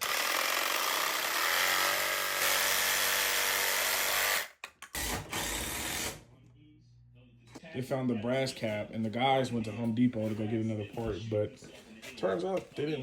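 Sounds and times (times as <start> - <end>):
power tool running: 0.0 - 6.2.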